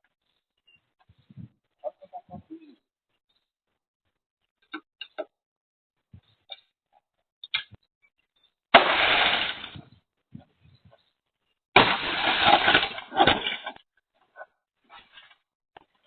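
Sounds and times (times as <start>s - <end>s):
loud crashes: 8.8s - 9.8s.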